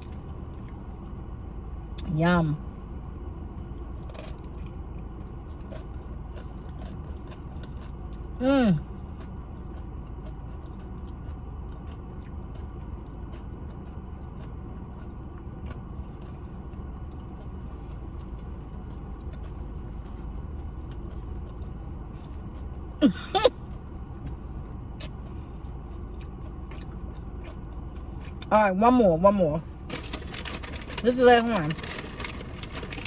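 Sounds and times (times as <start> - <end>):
chewing clicks: 4.0 - 8.3, 9.2 - 17.5, 25.0 - 28.5
person humming: 23.0 - 23.5.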